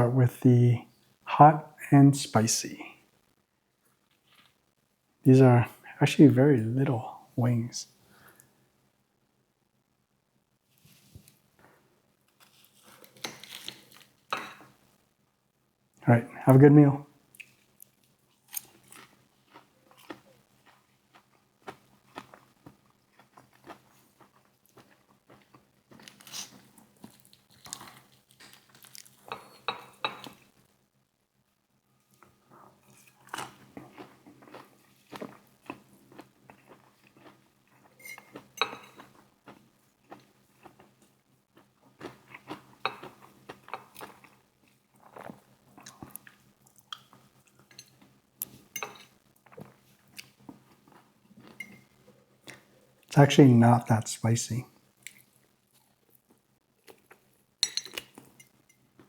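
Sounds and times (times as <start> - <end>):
dishes clinking: 14.3 - 14.7, 29.3 - 30.4, 38.0 - 39.1, 42.8 - 43.1, 48.7 - 49.2, 51.6 - 51.9, 57.6 - 58.8
chewing: 17.3 - 30.5, 32.1 - 53.1, 55.0 - 59.0
crispy fried chicken crunching: 17.4 - 29.6.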